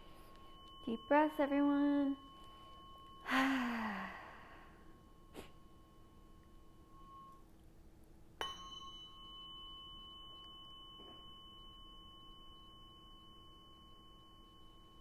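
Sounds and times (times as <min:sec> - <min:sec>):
tuning fork ringing tone: 0:00.0 - 0:15.0
tuning fork strike click: 0:08.4 - 0:11.5.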